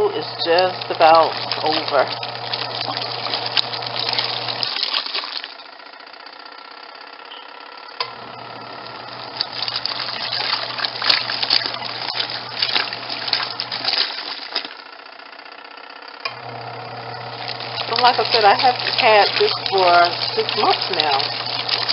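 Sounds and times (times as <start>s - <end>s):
washing machine motor humming: 0.0s - 21.9s
water sloshing: 0.1s - 5.7s, 8.9s - 14.9s, 17.1s - 21.9s.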